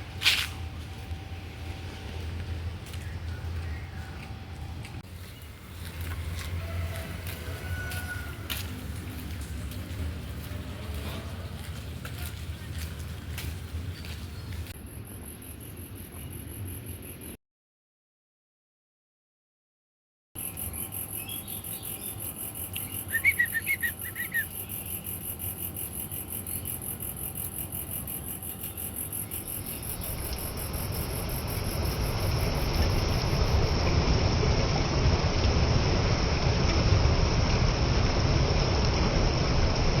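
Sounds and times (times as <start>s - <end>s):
low rumbling noise: 0.0s - 17.3s, 28.5s - 40.0s
insects trilling: 20.4s - 33.7s
bird chirps: 20.5s - 25.1s.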